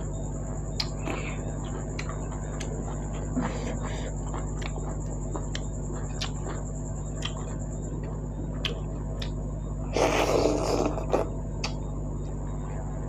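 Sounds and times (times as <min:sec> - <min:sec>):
steady low hum: 0:00.0 - 0:13.0
wet chewing and lip smacks: 0:00.7 - 0:09.4.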